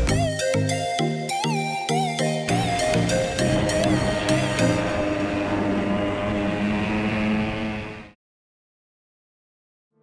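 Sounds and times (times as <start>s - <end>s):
upbeat electronic music: 0.0s - 5.1s.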